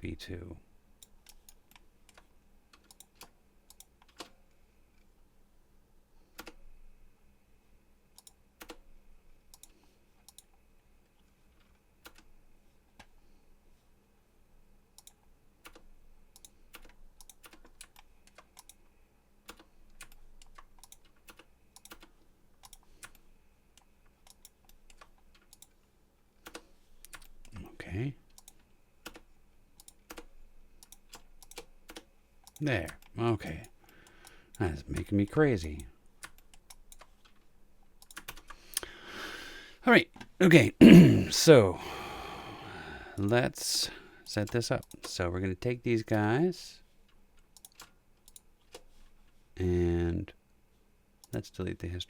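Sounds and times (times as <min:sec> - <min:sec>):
computer keyboard and mouse clicks: 0:01.0 - 0:04.4, 0:06.3 - 0:06.7, 0:08.1 - 0:08.9, 0:09.5 - 0:10.6, 0:11.5 - 0:12.3, 0:15.0 - 0:25.8, 0:26.4 - 0:27.6, 0:28.3 - 0:38.9, 0:47.1 - 0:49.0, 0:51.2 - 0:51.4.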